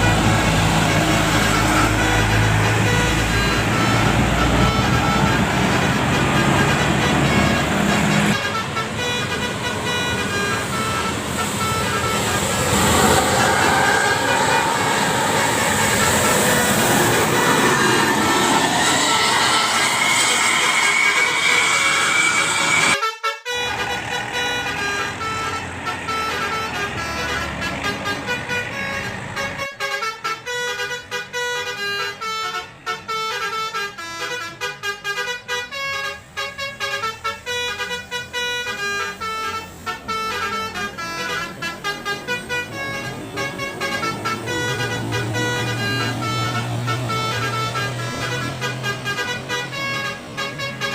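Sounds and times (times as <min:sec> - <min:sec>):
loud rushing noise: 0:00.0 - 0:23.0
bus engine noise: 0:00.0 - 0:50.9
multi-tone bus horn tune: 0:00.0 - 0:50.9.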